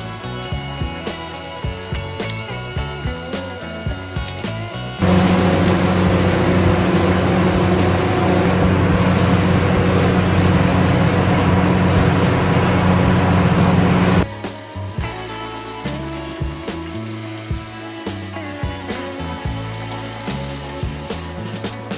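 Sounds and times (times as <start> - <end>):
motor hum: 5.0 - 14.2
power tool hissing: 5.0 - 14.3.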